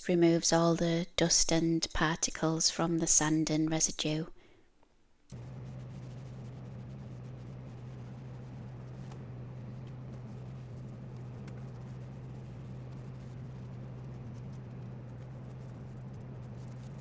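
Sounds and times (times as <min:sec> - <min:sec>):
low electrical hum: 0:00.0 - 0:17.0
hands rubbing on wood: 0:05.3 - 0:17.0.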